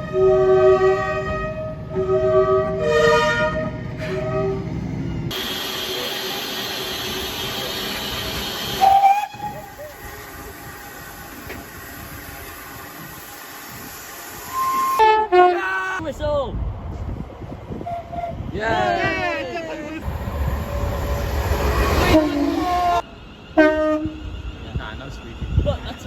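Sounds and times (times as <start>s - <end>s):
train horn blasts: 0.0s - 4.6s, 8.6s - 11.2s, 14.5s - 15.8s, 21.7s - 24.3s.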